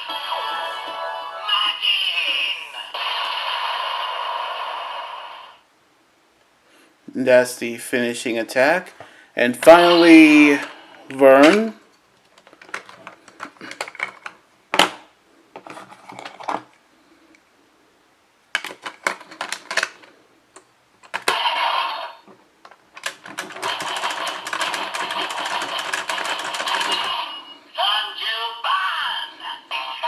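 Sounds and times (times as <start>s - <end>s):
toy electronic sound effects: 21.3s - 22.2s
plastic toy clicks and ratcheting: 23.0s - 27.1s.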